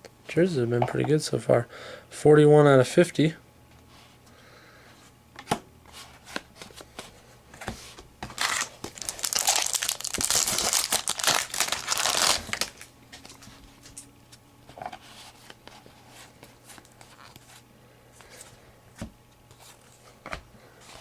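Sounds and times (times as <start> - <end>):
wrapper tearing and crinkling: 8.4 - 12.9.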